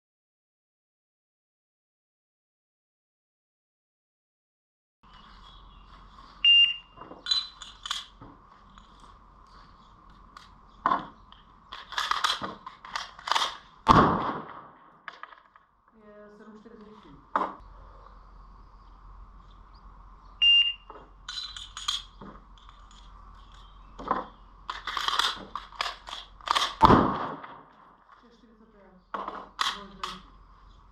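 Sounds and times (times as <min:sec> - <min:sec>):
faint steady hum: 0:05.0 - 0:30.9
high timer beep: 0:06.4 - 0:07.6, 0:20.4 - 0:20.9
pistol parts clicking and clacking: 0:07.2 - 0:09.1, 0:10.3 - 0:13.9, 0:15.1 - 0:15.6, 0:21.3 - 0:27.5, 0:29.2 - 0:30.3.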